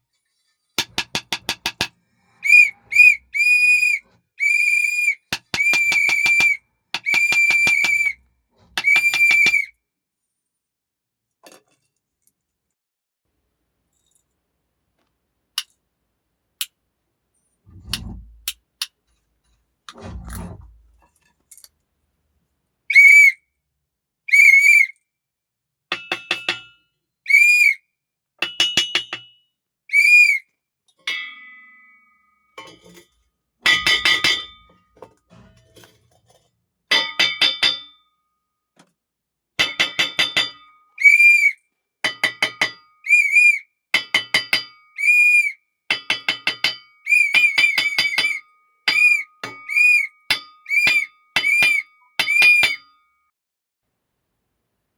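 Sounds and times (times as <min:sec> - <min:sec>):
high whistle blasts: 0:02.4 - 0:08.2, 0:08.8 - 0:09.7, 0:22.9 - 0:23.4, 0:24.3 - 0:24.9, 0:27.3 - 0:27.8, 0:29.9 - 0:30.4, 0:41.0 - 0:41.6, 0:43.1 - 0:43.6, 0:45.0 - 0:45.6, 0:47.1 - 0:50.1, 0:50.7 - 0:52.8.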